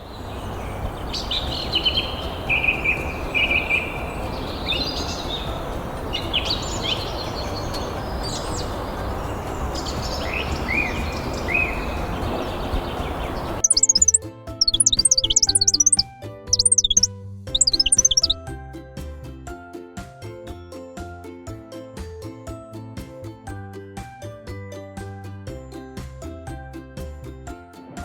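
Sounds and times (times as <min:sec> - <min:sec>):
outdoor background hiss: 0:00.0 - 0:14.1
birds chirping and whistling: 0:00.0 - 0:18.4.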